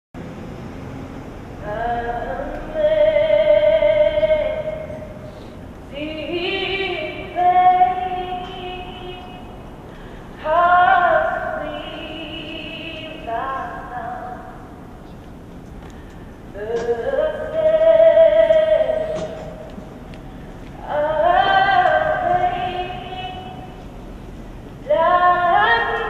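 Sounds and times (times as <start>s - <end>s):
woman singing long notes: 20.8s - 23.7s.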